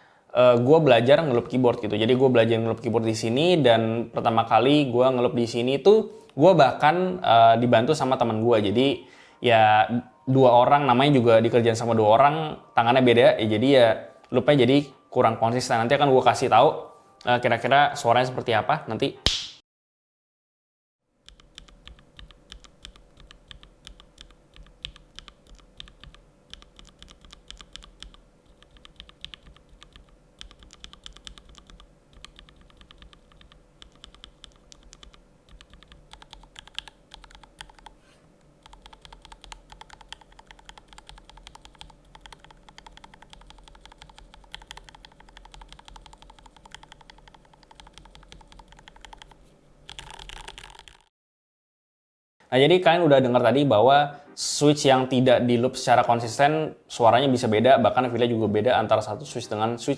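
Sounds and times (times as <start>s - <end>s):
mechanical keyboard typing: 21.3s - 38.0s, 38.6s - 51.1s.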